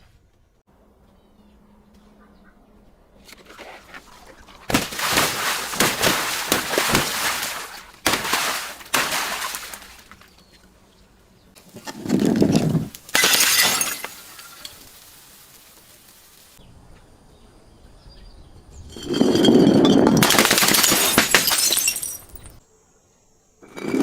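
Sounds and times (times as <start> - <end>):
glass bottles shattering: 4.7 - 10.2, 12.0 - 15.0, 18.9 - 22.6.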